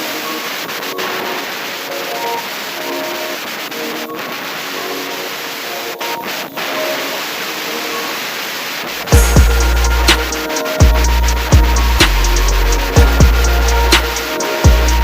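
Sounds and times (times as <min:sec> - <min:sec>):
steady hiss: 0:00.0 - 0:15.0
melody of short notes: 0:09.2 - 0:15.0.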